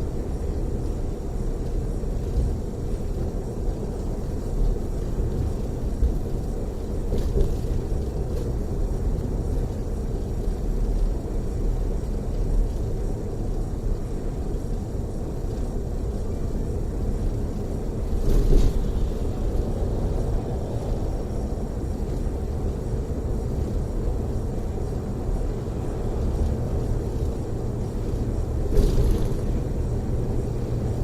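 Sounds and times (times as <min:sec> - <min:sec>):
bus engine and tyre rumble: 0:00.0 - 0:31.0.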